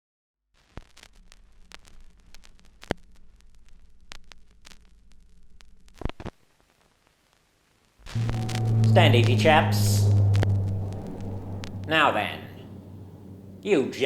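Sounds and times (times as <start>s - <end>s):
crackling clicks: 0.6s - 7.4s
steady low hum: 8.0s - 14.0s.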